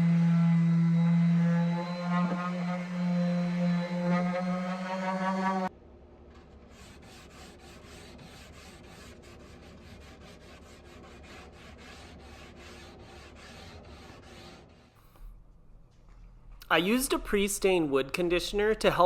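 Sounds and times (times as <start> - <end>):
sanding wood strokes: 6.4 - 15.2
steady low hum: 15.0 - 19.0.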